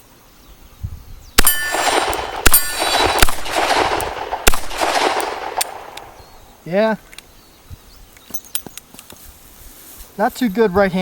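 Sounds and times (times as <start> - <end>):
metallic clang: 1.4 - 3.2
revolver gunshots with echo: 1.4 - 6.3.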